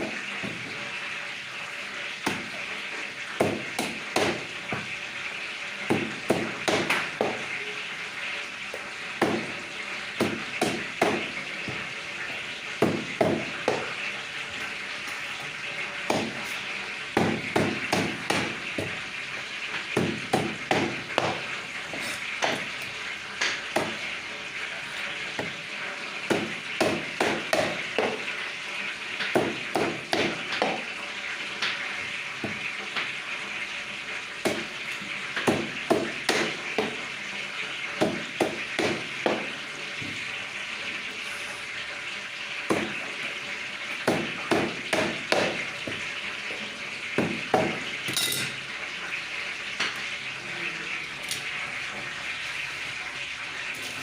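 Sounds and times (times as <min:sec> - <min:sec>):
cleaver chopping on block: 0:44.1 - 0:45.6.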